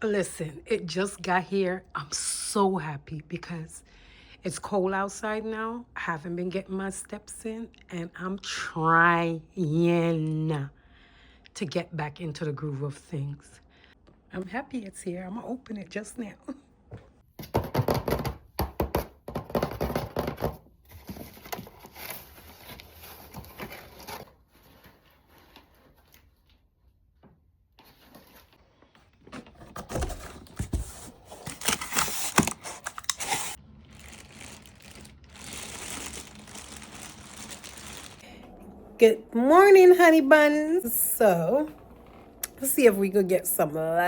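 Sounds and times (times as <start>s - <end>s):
cardboard scraping: 27.8s - 38.2s
tape tearing: 29.8s - 38.2s
plastic crinkling: 30.6s - 38.3s.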